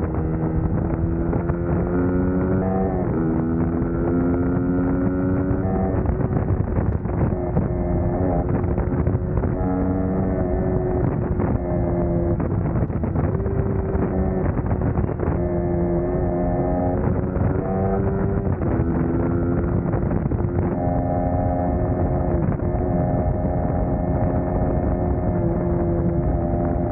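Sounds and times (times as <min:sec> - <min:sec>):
motorcycle engine running: 0:00.0 - 0:26.9.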